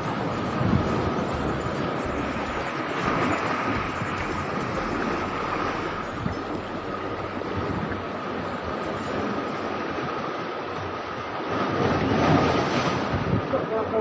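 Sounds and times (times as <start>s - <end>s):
thin high tone: 0.0s - 10.8s
surf washing against rocks: 0.0s - 14.0s
wind buffeting microphone: 0.0s - 14.0s.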